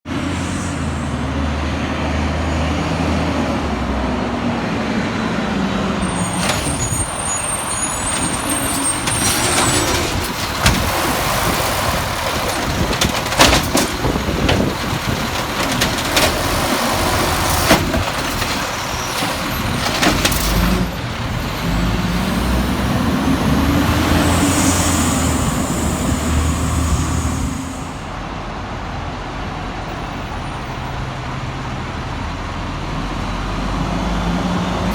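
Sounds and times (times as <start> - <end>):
garbage truck diesel engine: 0.0 - 34.9
sharp knocks and bangs: 9.0 - 20.8
air hiss: 24.4 - 28.1.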